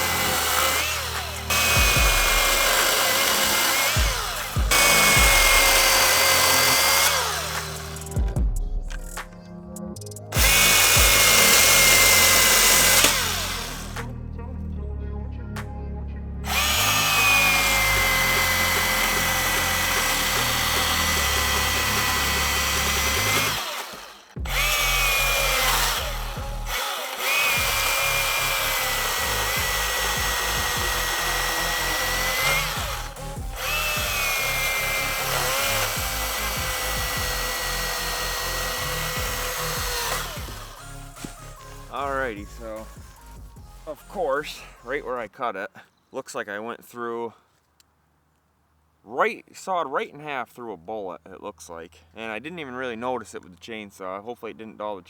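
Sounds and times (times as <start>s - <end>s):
chainsaw cutting log: 0.0s - 9.4s, 10.3s - 14.2s, 16.5s - 43.0s.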